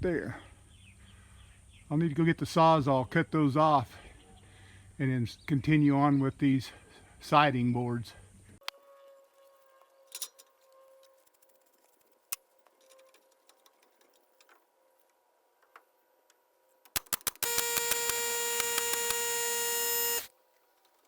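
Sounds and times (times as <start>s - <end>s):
sharp clicks: 16.9s - 20.3s
power tool motor running: 17.3s - 20.3s.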